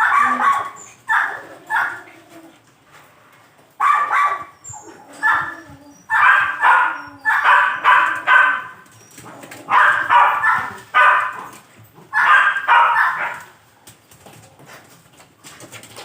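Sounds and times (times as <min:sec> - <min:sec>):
dog barking: 0:00.0 - 0:02.1, 0:03.8 - 0:04.5, 0:05.2 - 0:08.8, 0:09.7 - 0:13.5.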